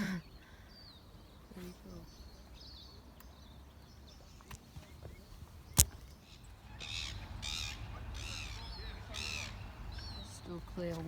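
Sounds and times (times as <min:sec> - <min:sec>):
bird calling: 0:00.0 - 0:11.0
sharp click: 0:05.8 - 0:06.2.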